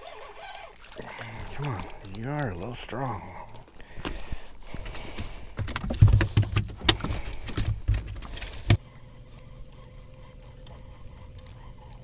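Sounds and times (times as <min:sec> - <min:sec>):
fish thumping in boat: 0:00.8 - 0:02.8, 0:03.6 - 0:08.8
gear clattering: 0:04.0 - 0:08.8.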